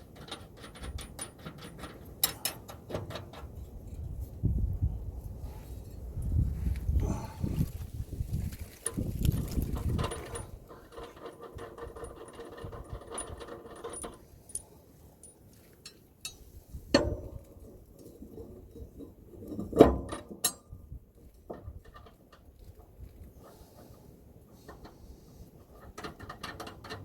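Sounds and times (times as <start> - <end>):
metal tools clinking and knocking: 8.8 - 16.4.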